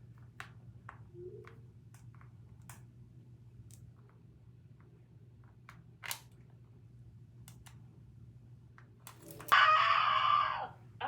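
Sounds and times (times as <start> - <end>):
faint clicks and taps: 0.0 - 2.9
low steady hum: 0.0 - 11.0
high-pitched scream: 9.5 - 10.8.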